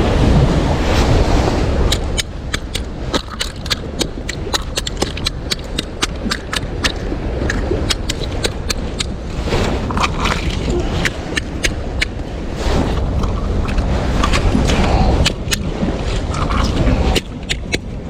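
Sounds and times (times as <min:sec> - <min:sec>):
surf: 0:00.0 - 0:18.0
wind rumble: 0:00.0 - 0:18.0.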